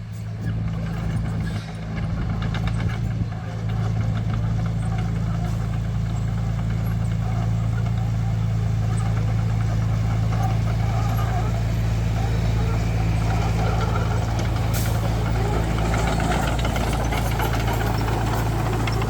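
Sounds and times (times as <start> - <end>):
diesel engine droning: 0.0 - 19.0
metal clanks and rattles: 13.2 - 19.0.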